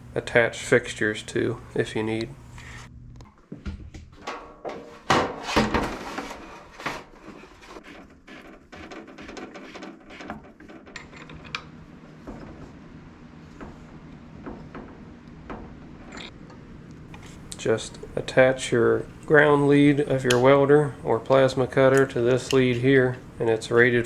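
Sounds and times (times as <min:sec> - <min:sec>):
metal parts clunking and scraping: 0:04.2 - 0:12.8.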